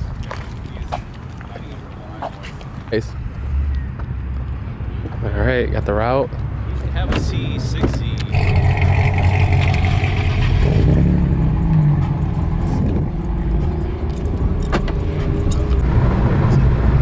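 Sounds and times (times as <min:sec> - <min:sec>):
road noise inside car: 0:06.5 - 0:17.0
car engine: 0:06.8 - 0:17.0.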